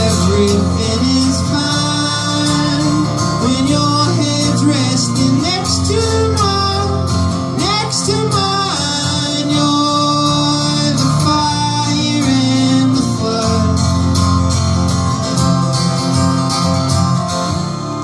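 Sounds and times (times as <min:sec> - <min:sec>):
people singing: 0:00.0 - 0:13.8
acoustic guitar strumming: 0:00.0 - 0:18.0.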